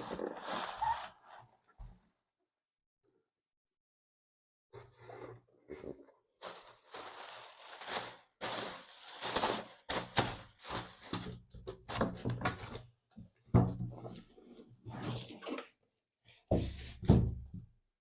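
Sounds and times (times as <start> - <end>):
packaging rustling and crackling: 0.0 - 1.2, 6.4 - 12.8.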